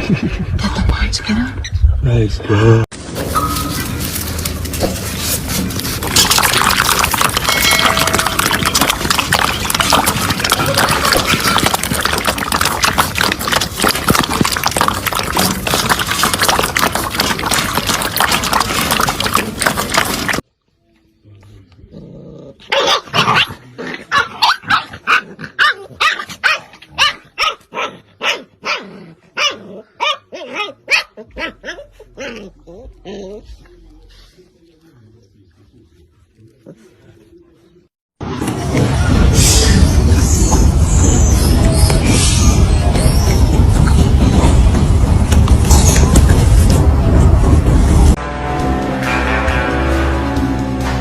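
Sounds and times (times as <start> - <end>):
dense noisy clatter: 3.0 - 20.4, 38.2 - 48.2
dog barking: 22.7 - 23.5, 24.1 - 32.4.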